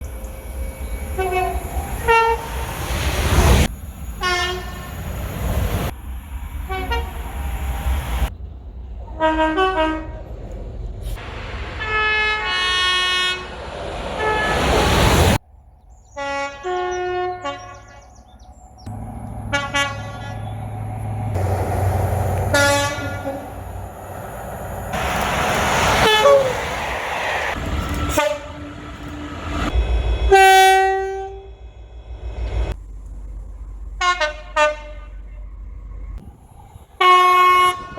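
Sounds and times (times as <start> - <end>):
passing train rumble: 0.0 - 37.9
train horn blasts: 1.1 - 2.7, 4.2 - 4.9, 6.7 - 7.2, 9.2 - 10.2, 11.8 - 14.9, 16.2 - 18.2, 18.9 - 21.7, 22.3 - 24.0, 25.7 - 26.8, 27.8 - 31.7, 34.0 - 35.4, 37.0 - 37.9.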